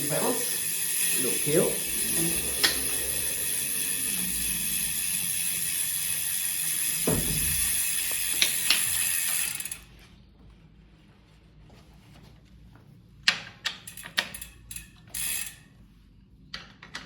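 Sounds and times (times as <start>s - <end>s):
ratcheting clicks: 0.0s - 9.8s, 13.6s - 15.6s.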